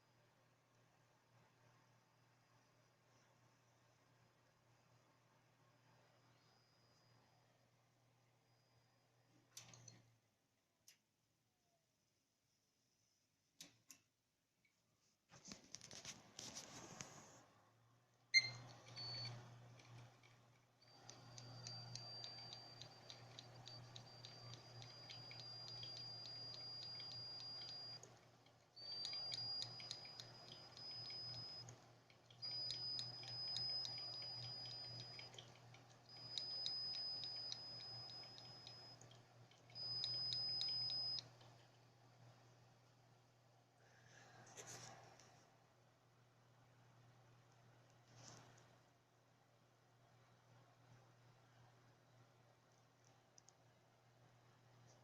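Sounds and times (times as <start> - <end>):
hard drive whistling and ticking: 18.4 - 20.1, 20.8 - 41.5.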